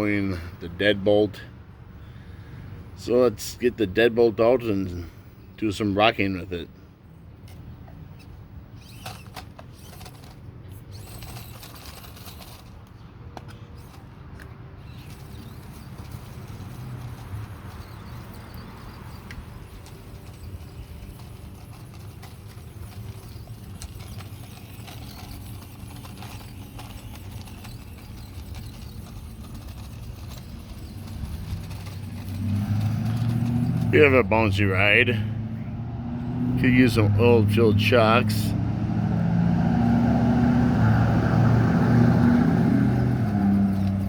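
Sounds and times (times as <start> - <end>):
small electric motor whine: 8.8 - 12.7, 14.8 - 33.9, 42.4 - 44.0.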